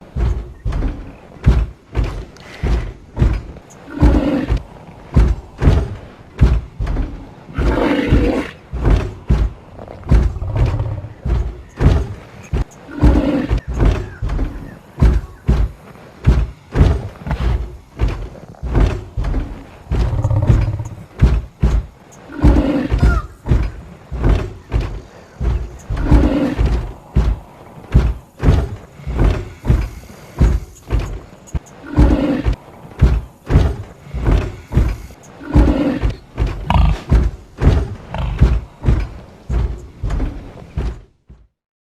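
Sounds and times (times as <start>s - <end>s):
rhinoceros calls: 22.2s - 23.8s.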